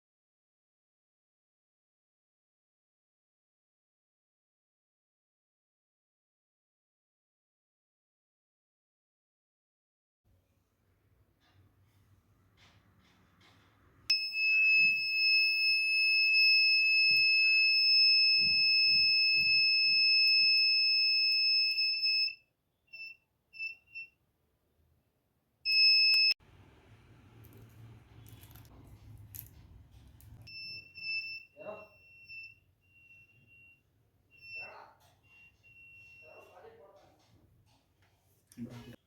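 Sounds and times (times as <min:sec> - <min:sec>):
alarm buzzer tone: 0:14.1 - 0:22.4
short beeps: 0:30.5 - 0:36.6.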